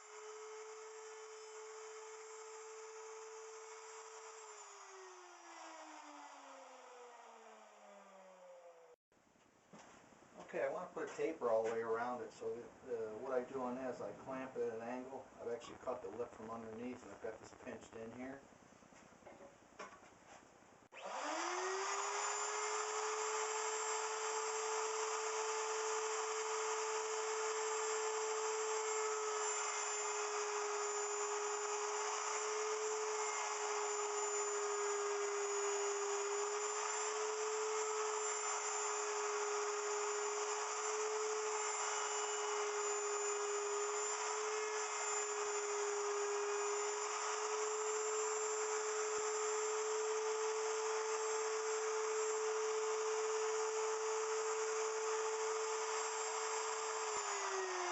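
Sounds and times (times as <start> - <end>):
router bit cutting wood: 0.0 - 8.9, 15.6 - 18.4, 20.9 - 57.9
wood router motor whine: 0.0 - 9.0, 20.9 - 57.9.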